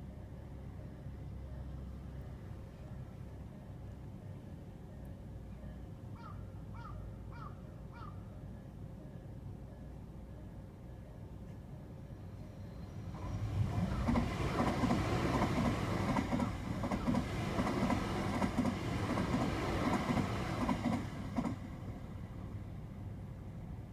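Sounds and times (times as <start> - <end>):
train wheels clattering over rail joints: 13.9 - 21.7.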